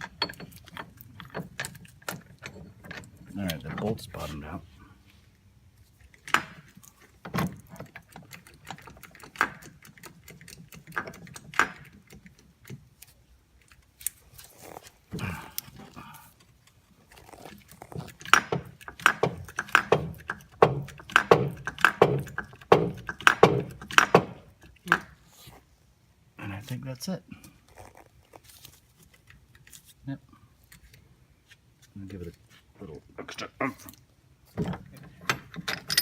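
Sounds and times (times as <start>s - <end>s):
metallic tool clicks and clanks: 0.0s - 3.9s, 35.2s - 36.0s.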